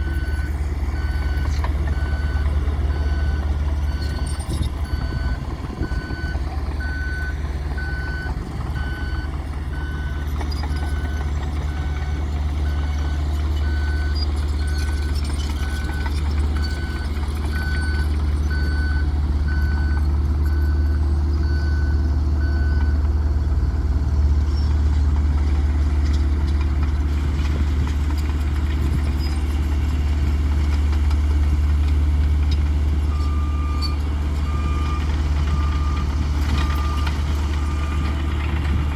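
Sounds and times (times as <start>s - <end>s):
reversing alarm beeping: 0.0s - 23.4s, 33.1s - 38.4s
heavy vehicle engine running: 0.0s - 38.9s.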